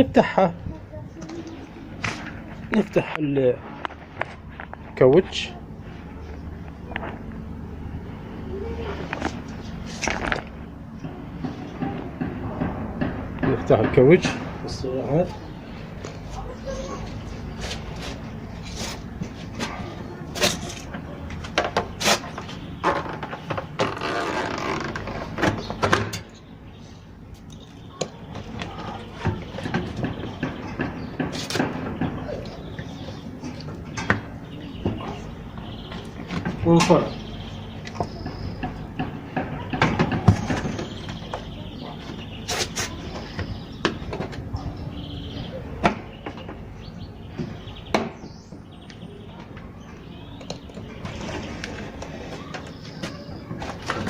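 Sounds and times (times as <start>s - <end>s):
sharp knocks and clicks: 10.2s - 14.5s, 27.4s - 33.0s, 37.8s - 41.6s
rubber gasket rubbing and scraping: 21.8s - 25.5s.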